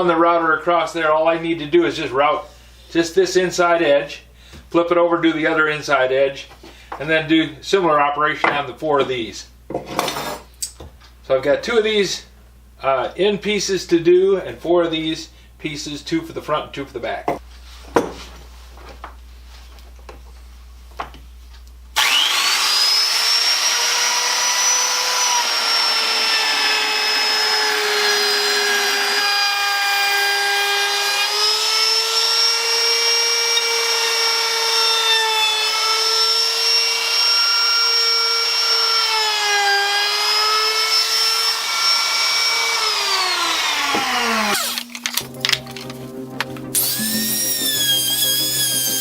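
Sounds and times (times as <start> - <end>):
router cutting wood: 22.0 - 45.9, 46.6 - 49.0
wood router whining: 22.0 - 49.0.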